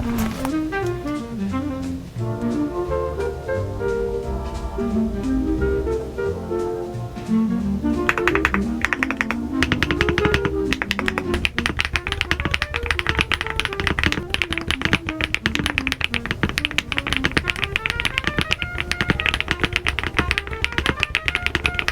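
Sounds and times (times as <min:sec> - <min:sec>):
background music with stepping melody: 0:00.0 - 0:21.9
mechanical keyboard typing: 0:08.1 - 0:21.9.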